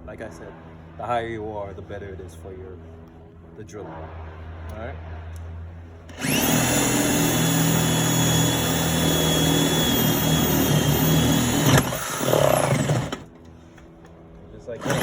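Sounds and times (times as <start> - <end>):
power drill whining: 6.1 - 13.4, 14.8 - 15.0.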